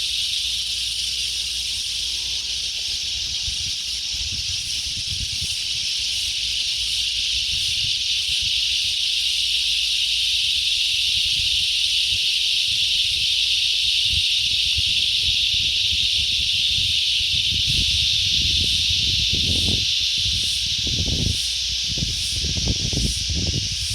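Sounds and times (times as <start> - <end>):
insect chorus drone: 0.0 - 23.9
wind buffeting microphone: 1.6 - 9.2, 10.8 - 23.9.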